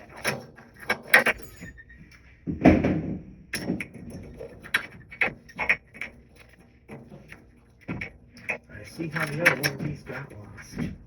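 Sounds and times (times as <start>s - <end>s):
knocks and clicks of handled parts: 0.0s - 11.0s
heavy thump: 2.4s - 3.8s.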